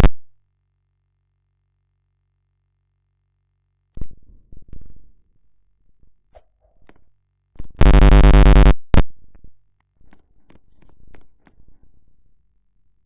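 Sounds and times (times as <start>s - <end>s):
faint clicks: 9.3s - 12.2s.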